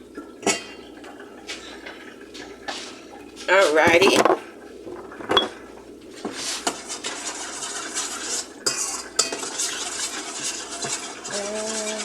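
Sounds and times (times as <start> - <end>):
spoon scraping and clinking bowl: 7.2 - 12.0.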